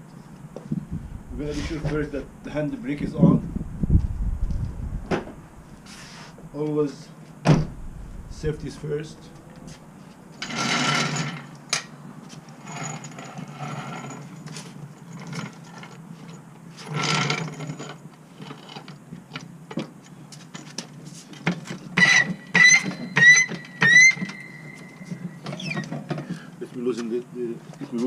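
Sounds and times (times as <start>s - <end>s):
wrench scraping on lug nuts: 22.0s - 26.0s
metallic squeaks: 22.0s - 26.1s.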